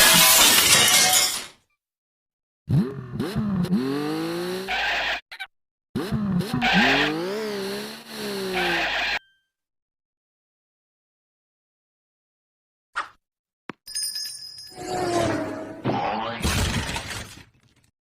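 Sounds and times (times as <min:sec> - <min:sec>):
cartoon engine revving: 0:02.7 - 0:09.2, 0:14.8 - 0:16.7
tire squeal: 0:04.3 - 0:05.2, 0:06.0 - 0:09.2.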